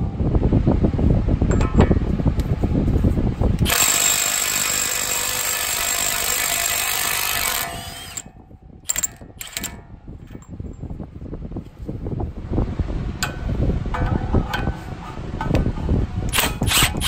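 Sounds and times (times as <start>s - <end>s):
impact wrench whining: 3.6s - 10.5s, 16.3s - 17.0s.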